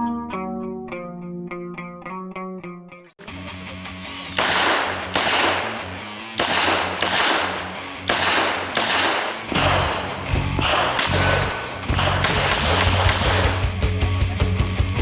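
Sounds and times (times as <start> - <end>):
revolver shots: 4.2 - 13.8
background music with bass line: 9.5 - 15.0.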